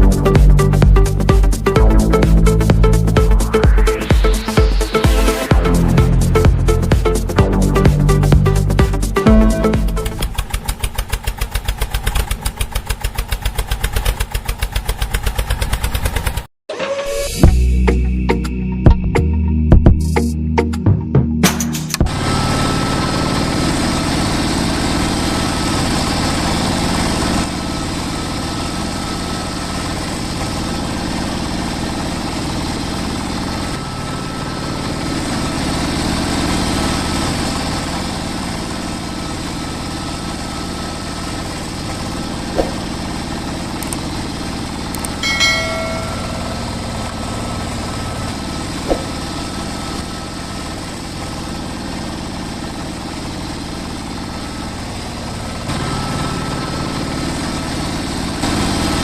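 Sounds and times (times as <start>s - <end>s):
short squeak: 16.7s - 17.4s.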